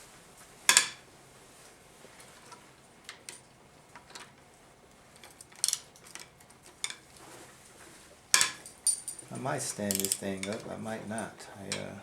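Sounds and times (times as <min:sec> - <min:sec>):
metallic clinks of hand tools: 0:08.4 - 0:12.0.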